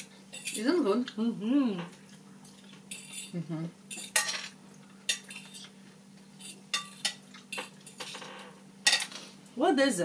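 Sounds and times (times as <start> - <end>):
cutlery scraping on plates: 0.0 - 0.7, 2.8 - 5.7, 6.4 - 9.2
faint steady hum: 0.0 - 10.0.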